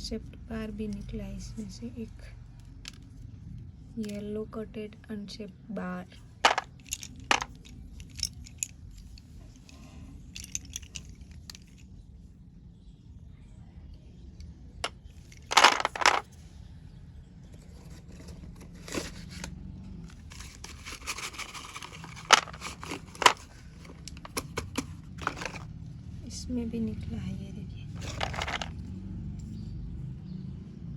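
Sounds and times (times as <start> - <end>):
clicks and rustling: 6.4 - 9.8, 10.4 - 11.8, 15.2 - 16.3, 20.1 - 25.7, 28.0 - 28.8
harsh scraping: 20.1 - 24.0.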